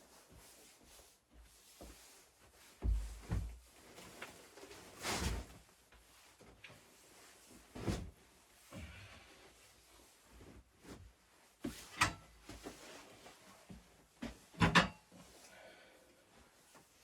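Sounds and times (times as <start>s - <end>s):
dull thumps and knocks: 2.8s - 3.6s.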